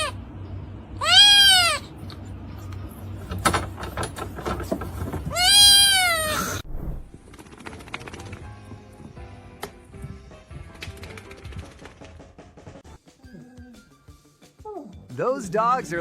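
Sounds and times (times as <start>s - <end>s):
animal high calls: 1.0s - 1.9s, 5.3s - 6.6s.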